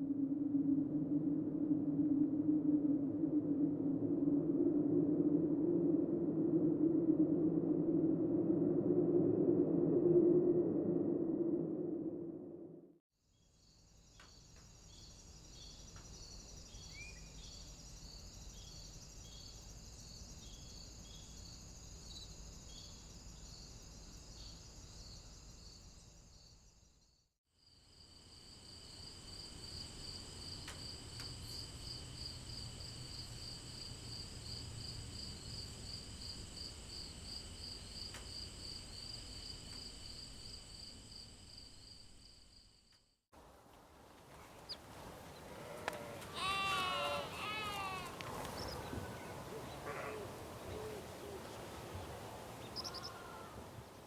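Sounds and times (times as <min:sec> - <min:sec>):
insects chirping: 0:00.0 - 0:12.0, 0:13.4 - 0:27.0, 0:27.8 - 0:54.0
low rumble: 0:00.0 - 0:13.0
bird call: 0:44.4 - 0:53.8.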